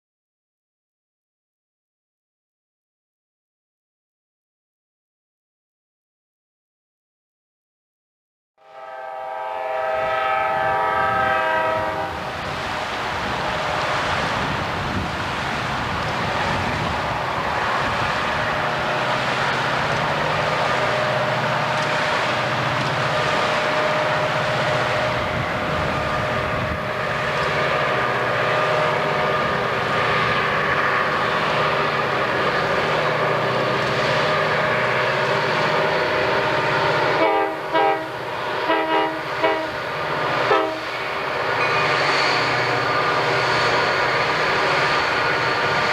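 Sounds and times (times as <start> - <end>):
locomotive horn: 8.6 - 12.4, 20.8 - 30.4, 36.1 - 41.0
rumble of passing train: 8.6 - 45.9
diesel locomotive engines working hard: 8.8 - 45.9.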